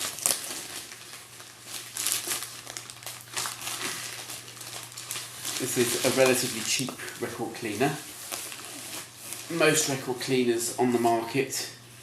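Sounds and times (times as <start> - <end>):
cardboard box crinkling and rustling: 0.0 - 6.9.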